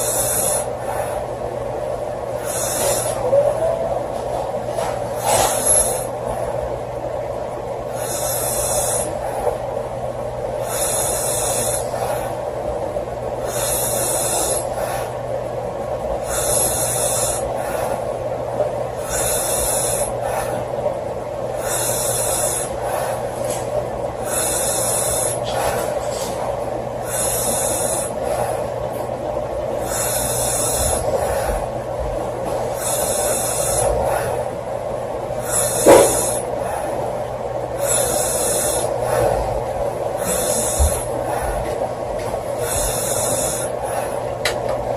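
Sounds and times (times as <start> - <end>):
woman snoring: 0.0 - 1.2, 2.4 - 4.0, 5.2 - 6.2, 7.9 - 9.6, 10.6 - 12.4, 13.4 - 15.1, 16.2 - 18.0, 19.0 - 20.7, 21.5 - 23.3, 24.2 - 26.0, 27.0 - 28.6, 29.8 - 31.6, 32.7 - 34.5, 35.4 - 37.0, 37.8 - 39.4, 40.1 - 41.7, 42.4 - 44.2
steady background hum: 0.0 - 44.9.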